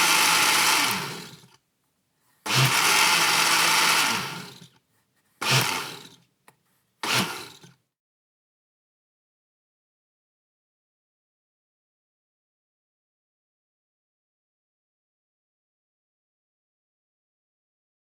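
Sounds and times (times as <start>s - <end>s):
electric blender running: 0.0s - 1.5s, 2.5s - 4.6s, 5.4s - 6.1s, 7.0s - 7.7s.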